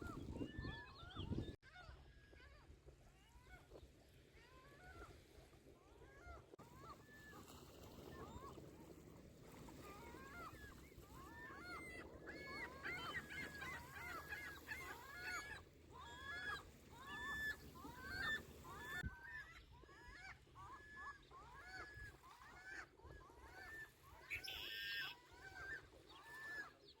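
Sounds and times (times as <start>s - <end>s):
gulls calling: 5.9s - 27.0s
lake waves washing: 6.6s - 19.0s.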